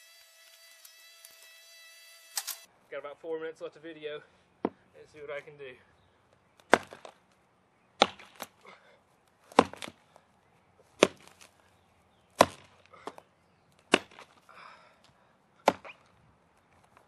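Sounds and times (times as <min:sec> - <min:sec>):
axe chopping into tree trunk: 0:06.6 - 0:07.2, 0:08.0 - 0:08.6, 0:09.5 - 0:10.0, 0:11.0 - 0:11.5, 0:12.4 - 0:13.2, 0:13.8 - 0:14.4, 0:15.6 - 0:16.0.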